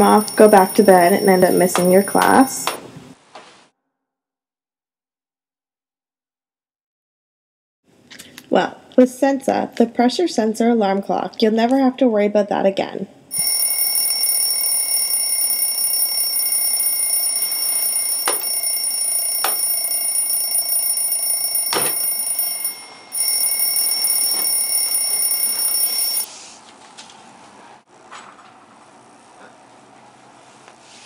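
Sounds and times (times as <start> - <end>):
alarm clock ringing: 0.0 - 2.8, 13.3 - 26.3.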